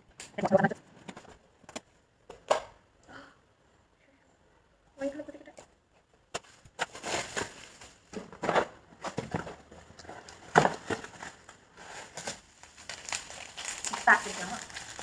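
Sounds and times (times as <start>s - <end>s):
packaging crinkling: 6.5s - 8.2s, 10.2s - 15.0s.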